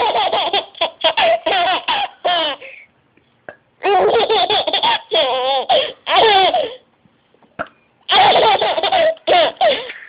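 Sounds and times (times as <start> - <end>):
baby laughing: 0.0 - 2.8, 3.8 - 6.8, 8.1 - 10.0.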